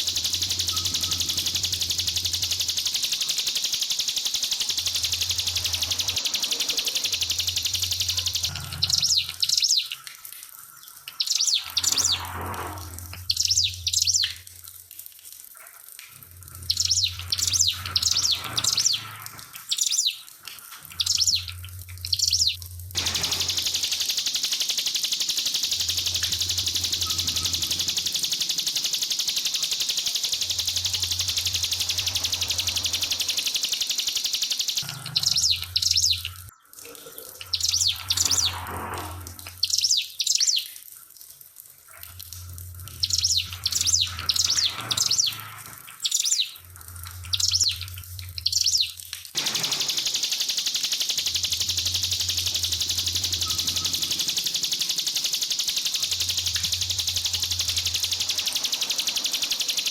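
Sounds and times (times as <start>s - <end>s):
bird chirping in rapid bursts: 0.0s - 10.2s, 10.8s - 12.4s, 13.1s - 14.5s, 16.5s - 36.6s, 37.4s - 40.8s, 42.7s - 59.9s
trickling water: 0.0s - 59.9s.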